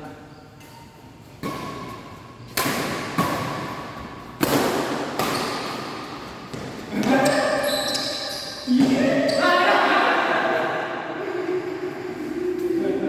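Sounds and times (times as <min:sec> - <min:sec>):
racket striking shuttlecock: 0:01.4 - 0:07.1.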